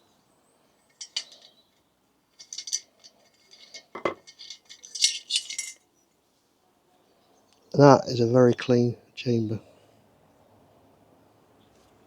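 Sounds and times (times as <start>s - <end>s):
metal clinks and rattles: 0.9s - 1.6s, 2.3s - 5.8s.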